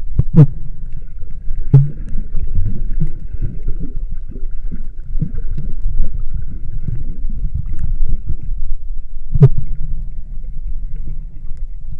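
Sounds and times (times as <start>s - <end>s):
low rumble of water: 0.0s - 11.9s.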